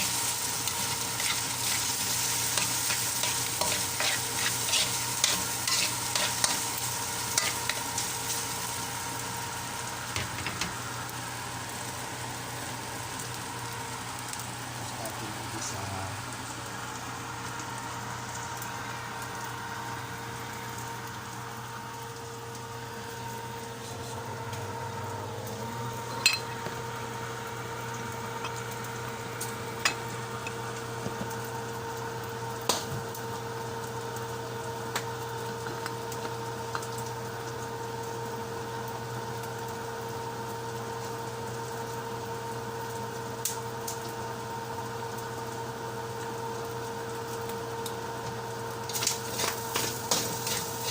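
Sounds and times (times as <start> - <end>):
steady hum: 0.0 - 32.8
vegetables sizzling in a pan: 0.0 - 50.9.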